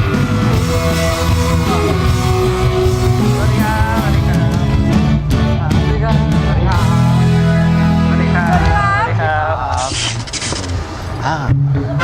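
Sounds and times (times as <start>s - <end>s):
rock music with full band: 0.0s - 9.4s.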